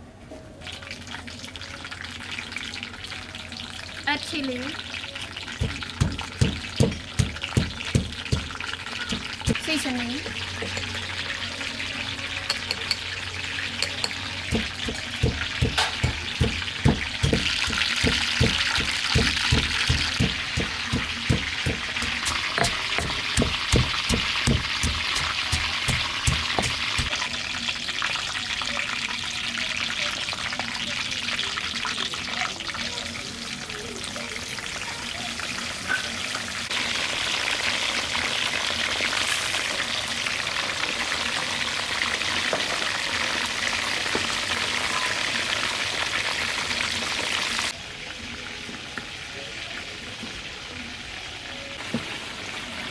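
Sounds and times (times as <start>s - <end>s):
food sizzling in a pan: 0.7s - 52.9s
spatula scraping a pan: 14.5s - 27.1s.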